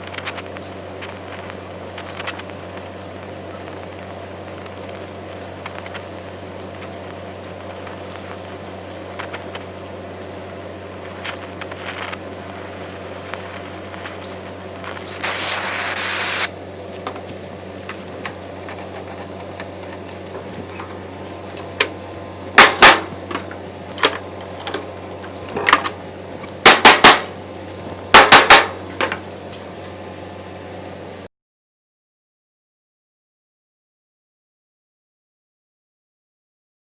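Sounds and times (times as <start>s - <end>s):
steady low hum: 0.0s - 31.3s
hissing scrape: 11.0s - 16.5s
hammer striking metal: 22.6s - 23.4s, 26.7s - 27.3s, 28.2s - 29.2s.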